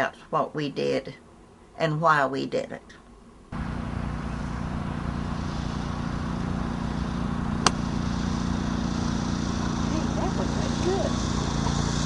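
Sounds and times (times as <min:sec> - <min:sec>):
machine motor humming: 0:03.6 - 0:12.0.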